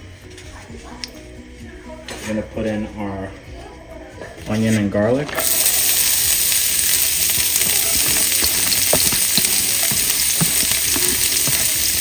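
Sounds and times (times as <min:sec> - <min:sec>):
onions sizzling in oil: 0:05.4 - 0:12.0.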